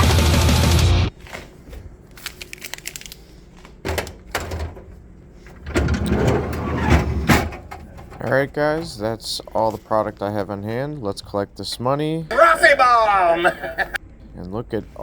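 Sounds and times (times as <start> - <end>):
vending machine clicks and rattles: 3.8 - 9.1.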